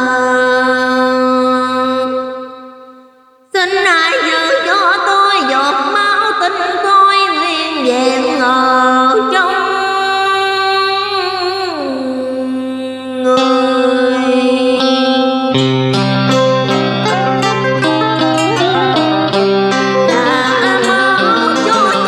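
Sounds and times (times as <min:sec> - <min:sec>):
wavering bending melody: 0:15.5 - 0:22.0
steady drone: 0:16.0 - 0:22.0.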